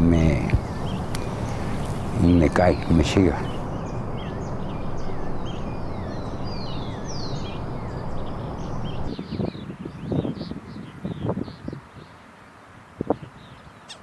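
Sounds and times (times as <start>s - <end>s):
steady low rumble: 0.0s - 9.3s
small birds chirping: 0.0s - 12.3s.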